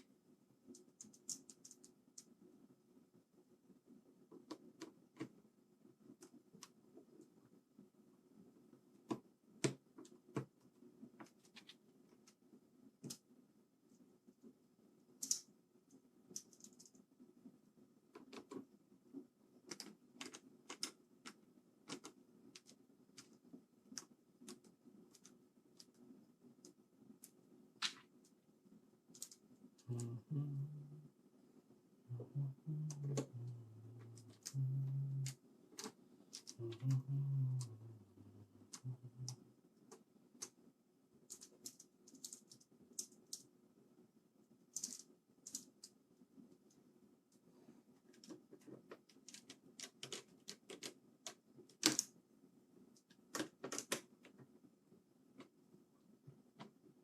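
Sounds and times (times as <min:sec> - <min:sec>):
small clicks of hard parts: 0:15.2 - 0:15.5, 0:48.1 - 0:52.1.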